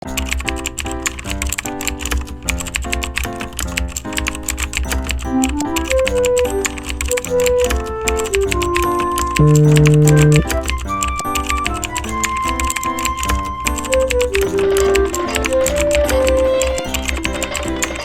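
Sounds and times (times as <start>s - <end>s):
fast clicking rhythm: 0.0s - 18.0s
rising and falling melody: 5.2s - 18.0s
changing chords: 5.4s - 10.7s.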